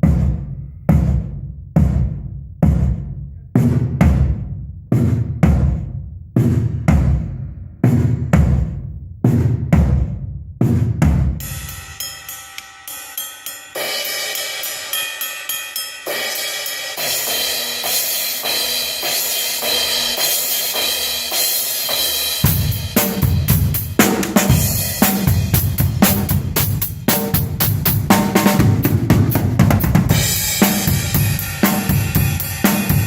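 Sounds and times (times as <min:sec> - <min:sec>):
bass drum and snare groove: 0:00.0 - 0:12.8, 0:16.1 - 0:33.0
cymbals struck and ringing: 0:11.4 - 0:27.6, 0:30.1 - 0:33.0.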